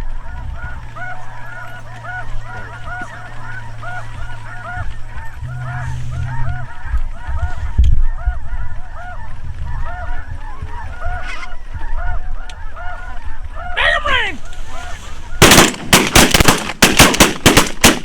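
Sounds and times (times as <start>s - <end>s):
geese honking: 0.0s - 17.2s
loud low thump: 2.0s - 7.3s.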